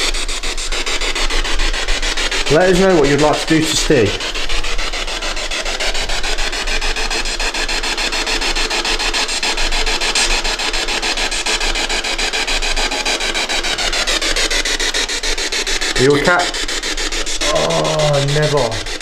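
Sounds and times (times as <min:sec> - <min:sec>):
rapid regular clicks: 0:00.0 - 0:19.0
radio static hissing: 0:02.4 - 0:04.8, 0:15.9 - 0:19.0.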